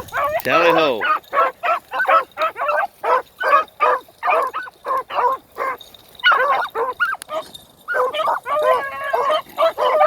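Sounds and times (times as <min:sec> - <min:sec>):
dogs baying and barking: 0:00.0 - 0:10.0.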